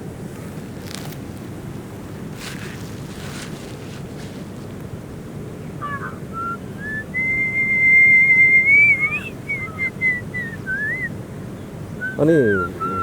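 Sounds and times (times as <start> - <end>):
high whistle: 6.4 - 11.1.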